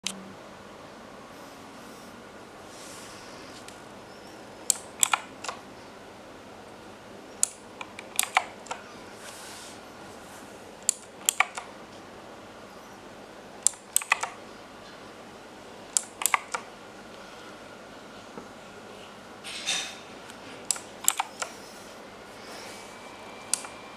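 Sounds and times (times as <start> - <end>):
mechanical keyboard clicks: 4.6 - 5.6, 7.4 - 8.8, 10.8 - 11.7, 13.6 - 14.4, 15.9 - 16.7, 20.6 - 21.6, 23.5 - 23.8.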